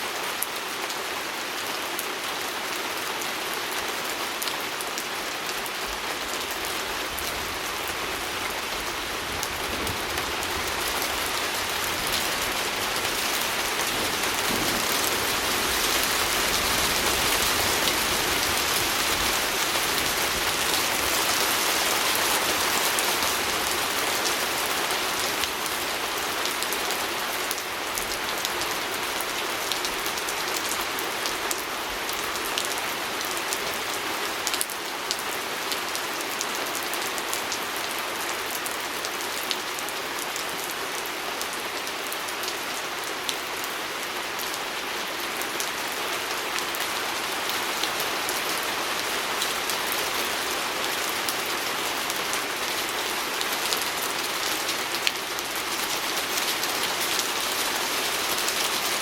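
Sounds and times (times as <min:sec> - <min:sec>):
rain on a window: 0:00.1 - 0:43.3.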